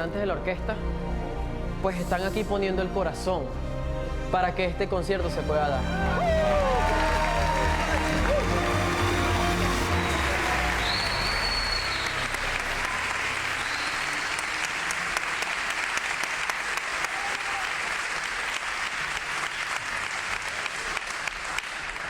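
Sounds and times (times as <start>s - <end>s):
audience applauding: 5.8s - 22.0s.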